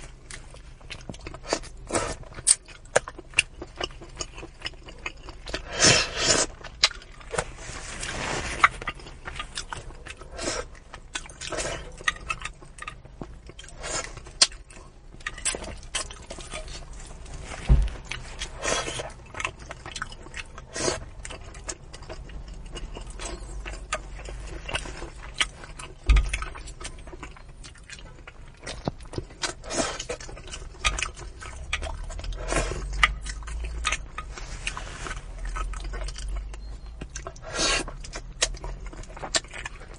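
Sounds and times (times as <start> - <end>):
person chewing and sucking: 0.0 - 39.9
low thumps: 17.6 - 18.2.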